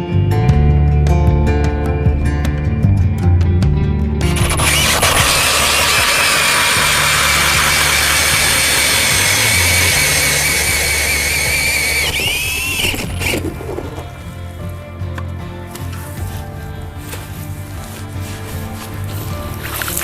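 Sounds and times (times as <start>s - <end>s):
power ice auger drilling: 4.2s - 14.3s, 18.3s - 20.0s.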